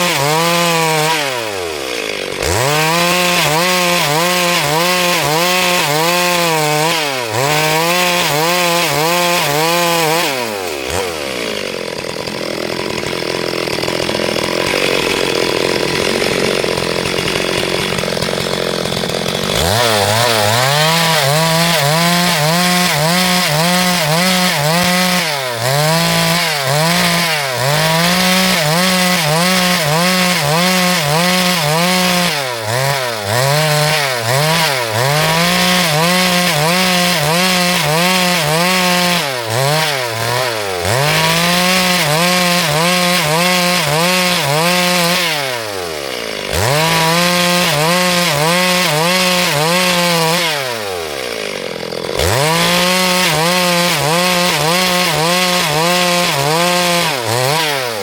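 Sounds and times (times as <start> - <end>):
chainsaw cutting: 0.0 - 58.0.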